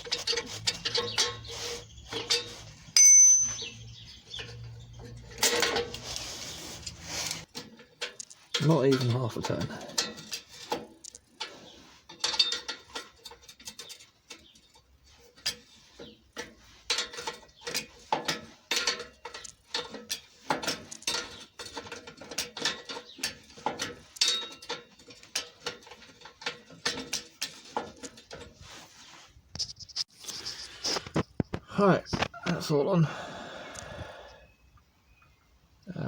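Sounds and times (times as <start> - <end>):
metal tools clinking: 0.0 - 28.7.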